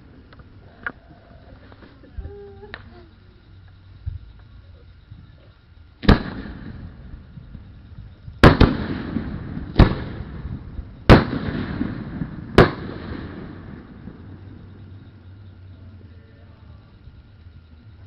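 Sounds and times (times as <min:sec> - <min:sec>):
fireworks bangs with rumbling echo: 0:06.0 - 0:15.5.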